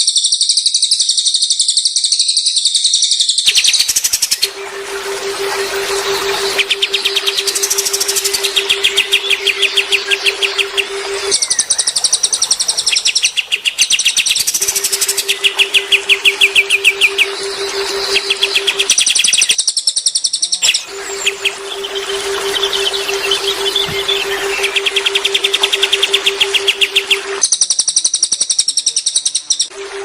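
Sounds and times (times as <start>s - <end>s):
songbirds trilling: 0.2s - 29.7s
low hum: 3.5s - 19.6s, 20.6s - 27.5s.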